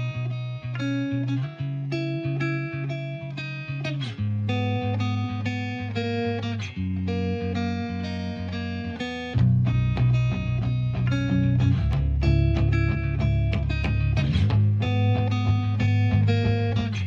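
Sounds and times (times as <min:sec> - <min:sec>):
plucked guitar melody: 0:00.0 - 0:17.0
bass line: 0:09.4 - 0:17.0.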